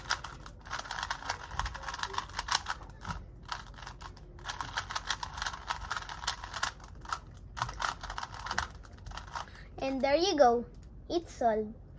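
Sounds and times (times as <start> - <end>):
puzzle cube plastic clicks: 0.0 - 9.5.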